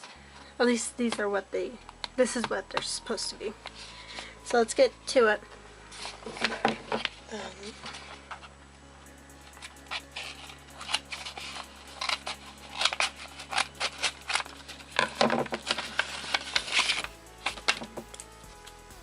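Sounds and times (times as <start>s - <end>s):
packaging rustling and crinkling: 9.6s - 18.8s.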